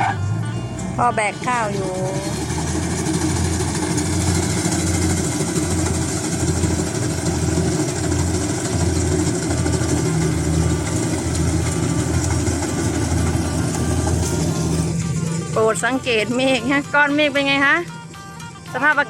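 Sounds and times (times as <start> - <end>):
large engine idling: 0.0 - 19.0.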